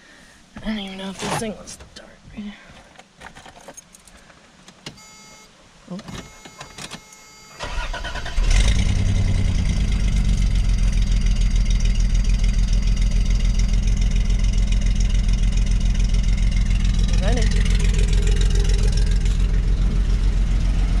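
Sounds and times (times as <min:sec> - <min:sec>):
car engine starting and idling: 0:04.0 - 0:21.0
ignition clicks: 0:04.7 - 0:08.9.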